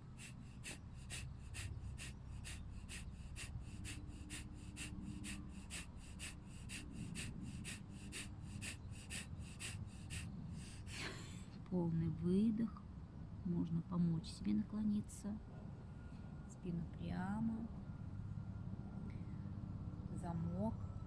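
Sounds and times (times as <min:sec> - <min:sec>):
short forceful exhales: 0:00.0 - 0:11.2.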